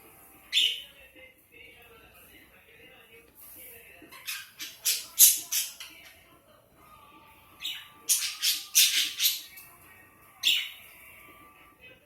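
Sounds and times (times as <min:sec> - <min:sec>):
bird squawking: 0:04.2 - 0:06.0, 0:07.6 - 0:09.6, 0:10.4 - 0:10.8.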